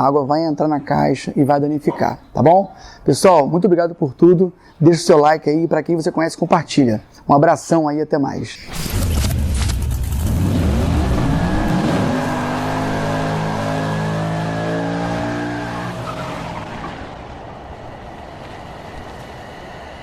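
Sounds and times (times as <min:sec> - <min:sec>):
car engine revving: 0:08.7 - 0:17.4.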